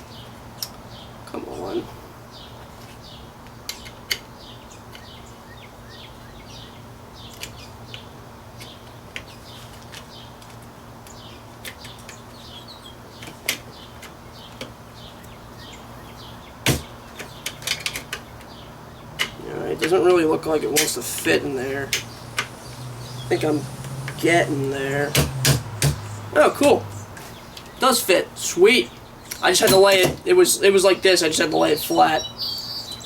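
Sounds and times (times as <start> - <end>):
steady low hum: 18.3 - 28.4
loud knock: 25.2 - 26.0.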